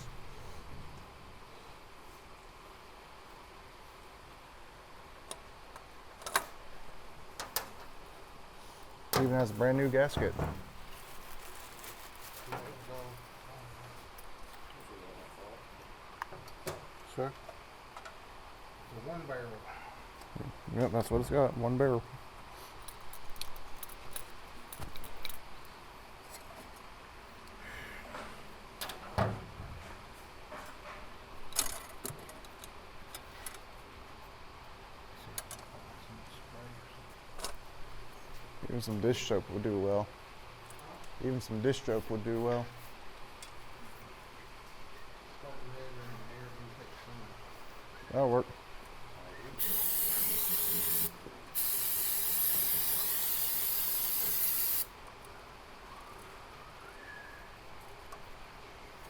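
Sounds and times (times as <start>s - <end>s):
dull thump: 10.2s - 10.8s
pressurized spray hissing: 49.6s - 54.9s.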